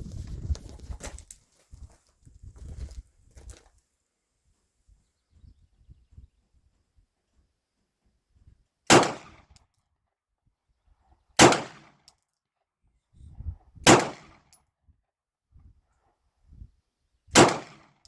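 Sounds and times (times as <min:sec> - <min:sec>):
pistol shots: 0:08.9 - 0:09.4, 0:11.4 - 0:12.0, 0:13.8 - 0:14.4, 0:17.4 - 0:17.9.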